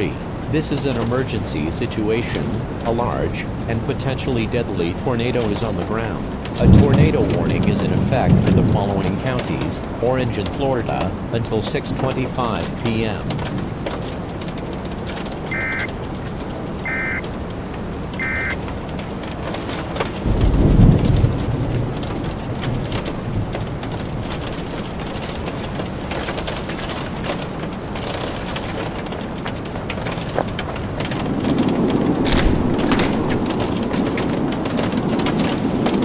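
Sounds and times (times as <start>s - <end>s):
heavy rain: 0.0s - 36.0s
thunder rumbling: 0.0s - 36.0s
warbling data bursts: 15.4s - 17.3s, 18.2s - 18.6s.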